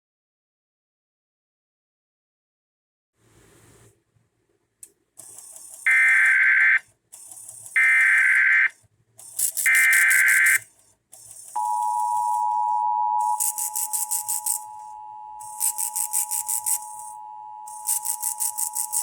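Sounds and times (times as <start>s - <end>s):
digital data bursts: 5.8s - 6.8s, 7.7s - 8.7s, 9.3s - 10.6s, 13.2s - 19.0s
two-tone attention signal: 9.7s - 10.6s, 11.6s - 19.0s.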